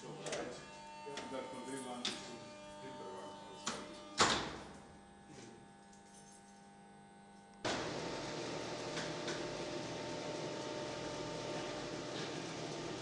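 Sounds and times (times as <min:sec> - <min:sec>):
lift humming: 0:07.7 - 0:13.0.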